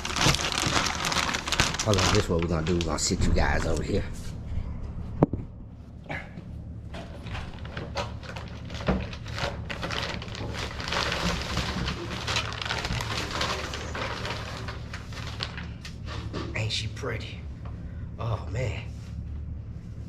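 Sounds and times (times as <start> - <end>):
packaging crinkling and rustling: 0.0 - 4.0, 7.0 - 16.3
steady low hum: 0.0 - 20.0.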